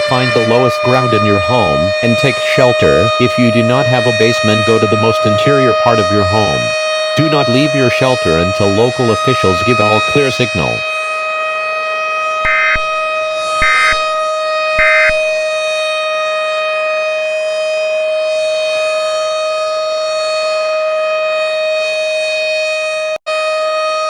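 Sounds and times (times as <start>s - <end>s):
siren steady tone: 0.0s - 24.0s.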